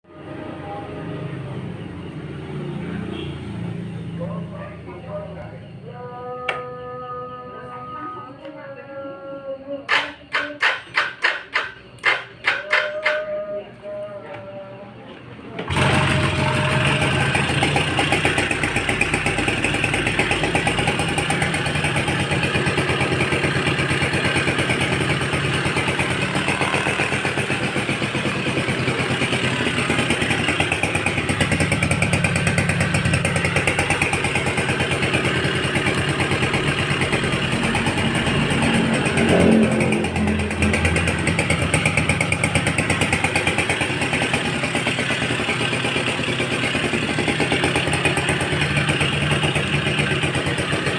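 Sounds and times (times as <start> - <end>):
two-stroke motorcycle engine idling: 0.2 - 6.0, 9.9 - 13.5, 15.6 - 50.9.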